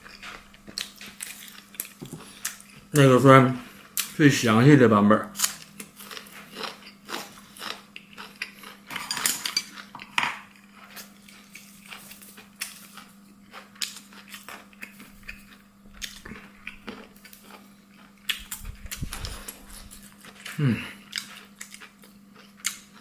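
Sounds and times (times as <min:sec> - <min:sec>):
faint steady hum: 0:00.0 - 0:23.0
utensils clinking against dishes: 0:08.9 - 0:10.4.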